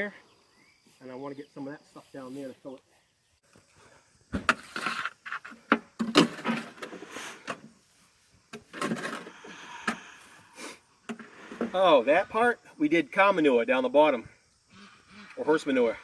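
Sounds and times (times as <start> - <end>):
irregular knocks and scraping: 3.5 - 10.4, 11.0 - 12.3.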